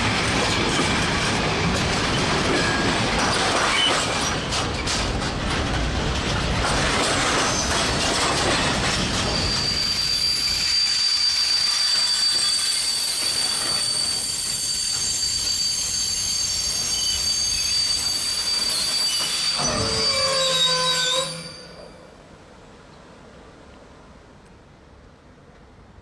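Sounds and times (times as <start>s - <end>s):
train rolling on rails: 0.0s - 26.0s
wheel squeal: 7.1s - 22.1s.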